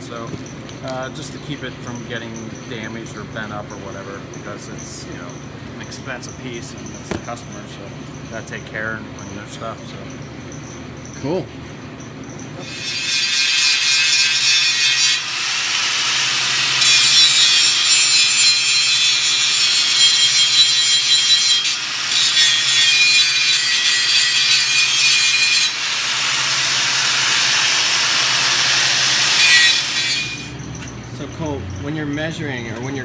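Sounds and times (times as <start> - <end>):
angle grinder grinding metal: 12.3 - 30.9.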